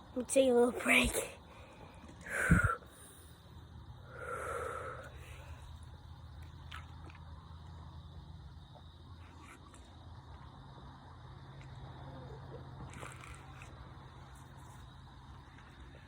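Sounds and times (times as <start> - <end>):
faint low hum: 0.0 - 16.0
person exhaling breathily: 2.2 - 3.2, 4.1 - 5.6.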